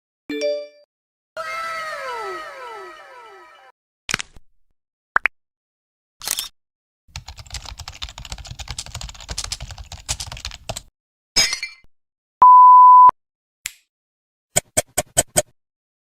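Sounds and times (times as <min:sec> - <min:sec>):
keyboard typing: 0:07.1 - 0:10.9
single-tone beep: 0:12.4 - 0:13.1.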